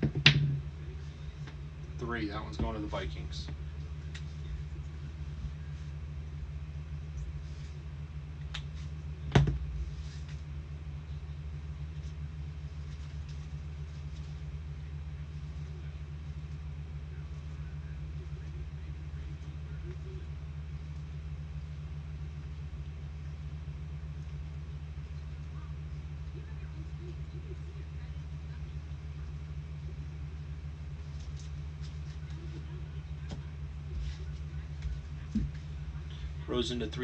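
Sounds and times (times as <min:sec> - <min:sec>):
steady low hum: 0:00.0 - 0:37.0
thump on table: 0:09.3 - 0:09.6.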